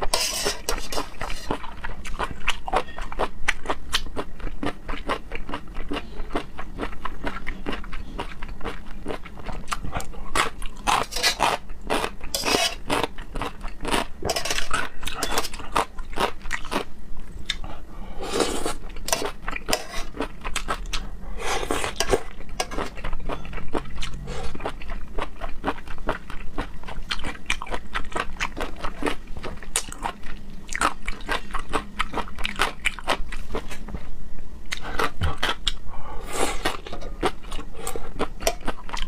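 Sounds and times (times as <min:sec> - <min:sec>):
chewing raw seafood: 0:00.9 - 0:16.9.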